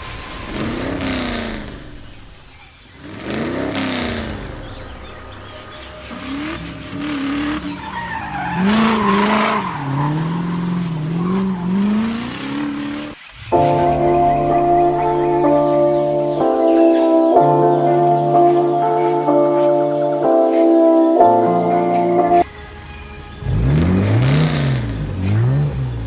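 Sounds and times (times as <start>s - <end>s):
rushes of noise: 0.0s - 17.4s
cartoon engine revving: 0.0s - 22.4s.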